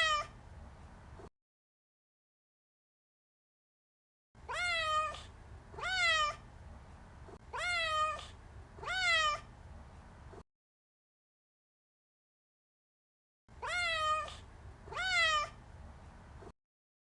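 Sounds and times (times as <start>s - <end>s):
cat meowing: 0.0s - 0.4s, 4.4s - 6.4s, 7.5s - 9.5s, 13.6s - 15.6s.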